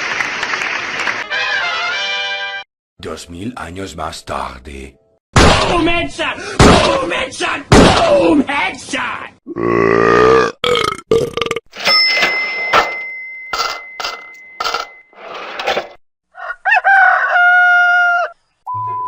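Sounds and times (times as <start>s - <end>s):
belch-like sound: 9.5s - 11.7s.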